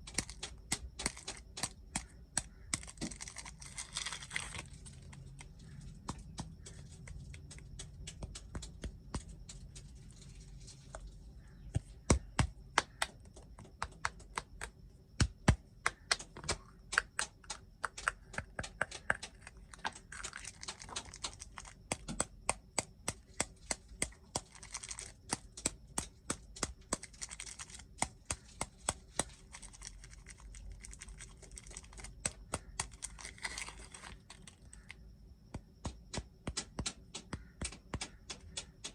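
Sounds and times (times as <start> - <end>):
plastic crinkling: 0.0 - 8.6, 19.2 - 22.2, 23.4 - 34.9
packaging taps and clicks: 0.0 - 10.2, 11.6 - 35.0, 35.6 - 38.9.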